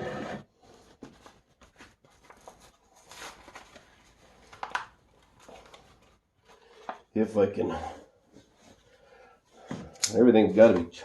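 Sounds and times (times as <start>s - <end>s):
package clicks and rustles: 1.6s - 7.0s.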